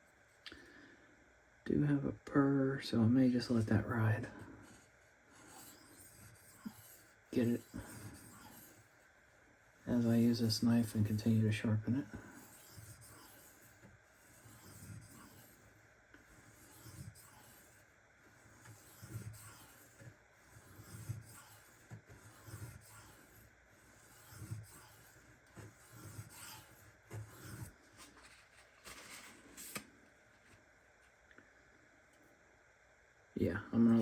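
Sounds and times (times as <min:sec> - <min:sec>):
knife scraping on whetstone: 0:12.2 - 0:15.6, 0:16.3 - 0:17.8, 0:18.4 - 0:27.8.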